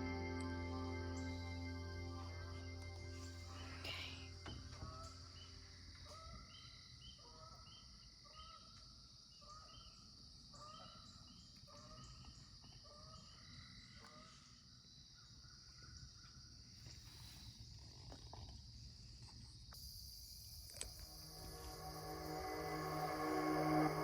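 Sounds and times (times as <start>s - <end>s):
high-pitched insect drone: 0.0s - 5.8s, 19.8s - 24.0s.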